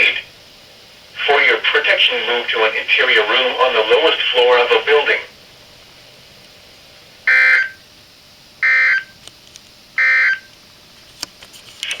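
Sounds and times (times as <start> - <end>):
buzzing digital data tones: 7.3 - 7.8.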